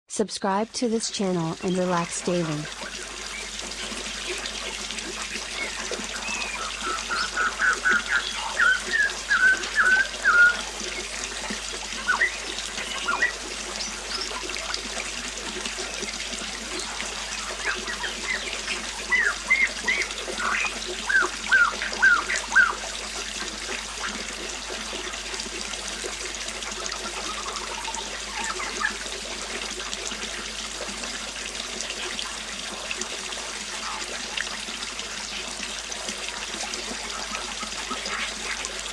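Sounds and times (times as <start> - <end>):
river water flowing: 1.2 - 38.9
bird singing high notes: 5.5 - 11.1, 12.0 - 14.4, 17.3 - 22.8.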